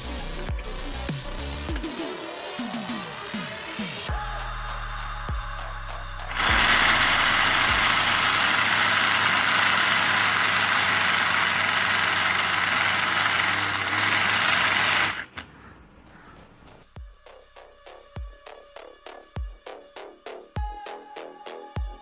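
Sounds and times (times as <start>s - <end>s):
small motor running: 6.3s - 15.4s.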